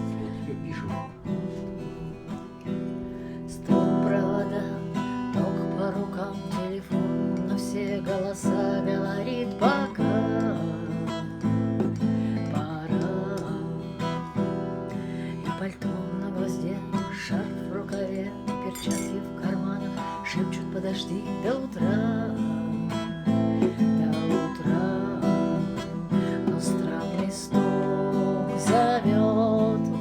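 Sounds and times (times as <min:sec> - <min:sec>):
acoustic guitar strumming: 0:00.0 - 0:30.0.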